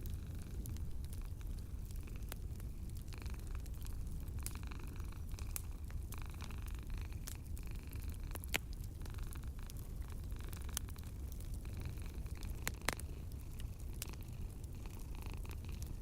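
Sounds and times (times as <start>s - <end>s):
cat purring: 0.0s - 16.0s
wood fire crackling and popping: 0.0s - 16.0s.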